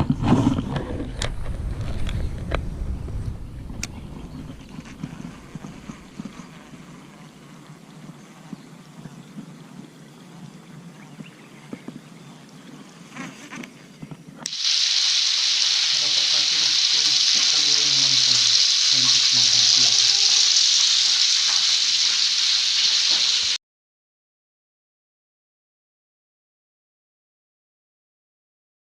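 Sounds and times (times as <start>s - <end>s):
faint outdoor sounds: 0.0s - 23.6s
loud static hiss: 4.2s - 8.7s, 14.5s - 23.6s.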